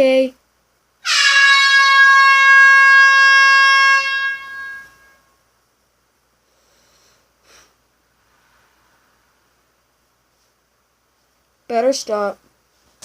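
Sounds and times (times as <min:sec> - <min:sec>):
loud air horn: 0:01.0 - 0:05.3.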